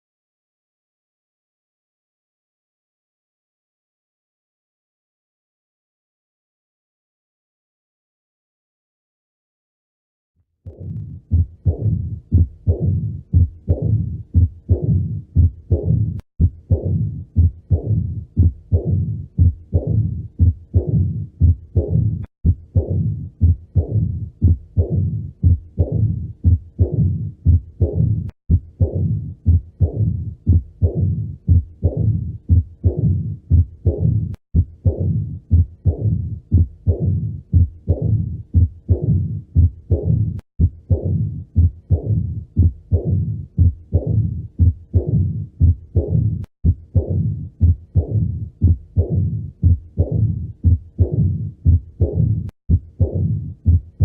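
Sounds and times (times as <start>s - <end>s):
heart valve sounds: 10.7s - 54.0s
low rumbling heart murmur: 10.7s - 54.0s.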